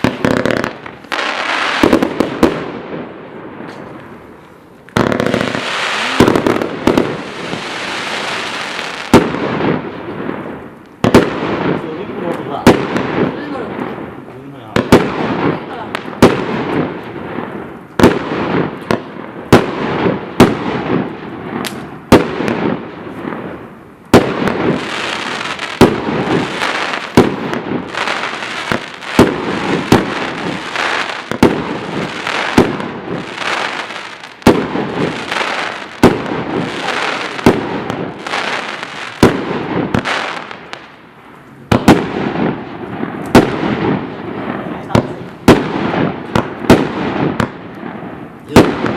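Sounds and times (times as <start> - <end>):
fireworks crackling: 0.0 - 48.9
fireworks reports: 0.0 - 48.9.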